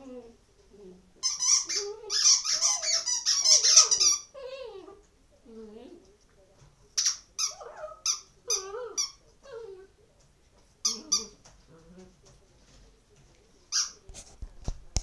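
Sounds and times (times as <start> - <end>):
dog whining: 0.0 - 6.0, 7.4 - 10.0, 10.8 - 12.1
rubber squeaky toy squeaking: 1.2 - 4.5, 7.0 - 9.2.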